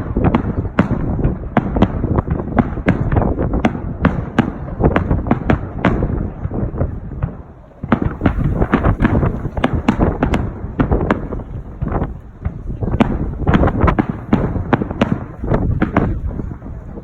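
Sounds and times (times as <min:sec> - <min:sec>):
fireworks bangs: 0:00.0 - 0:17.0.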